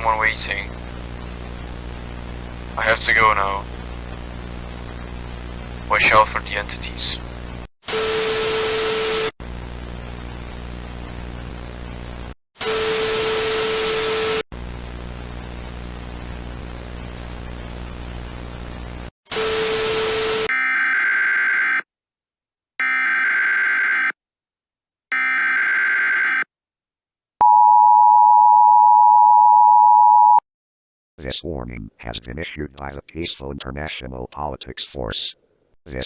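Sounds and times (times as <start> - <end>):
hissing static: 0.0 - 7.6
static bursts with steady tone: 0.0 - 7.7.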